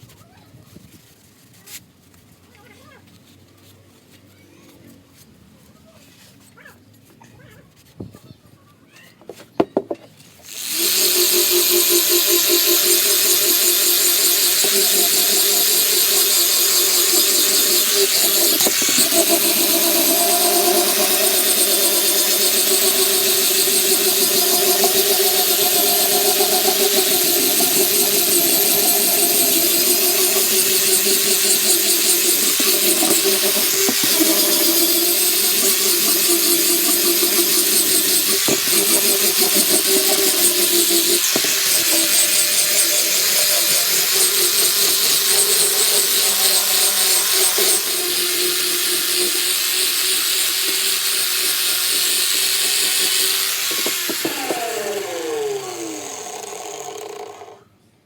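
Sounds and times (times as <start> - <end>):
power tool squealing: 9.7 - 57.6
sharp clicks: 10.5 - 48.0.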